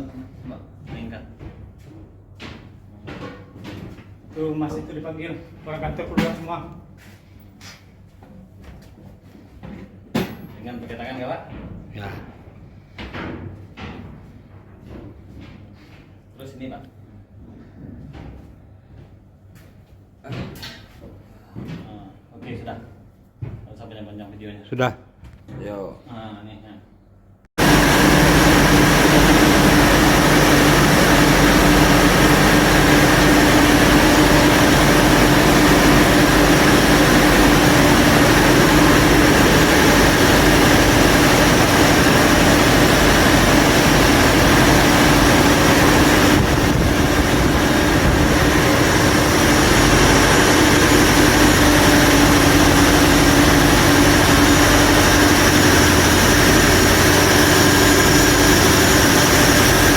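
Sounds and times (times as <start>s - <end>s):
diesel engine droning: 27.6s - 59.9s.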